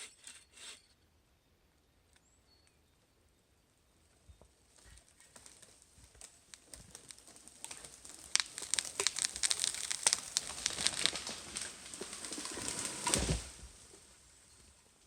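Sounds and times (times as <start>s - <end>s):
crackling and snapping: 4.7s - 14.0s.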